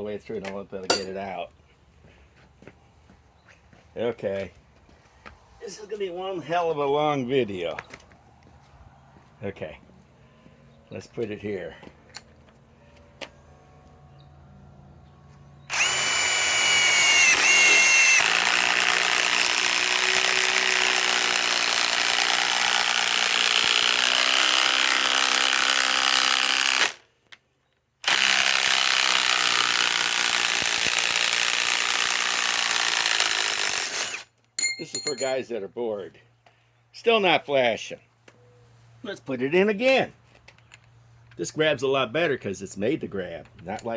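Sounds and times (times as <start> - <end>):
impact wrench hammering: 0.9 - 1.3.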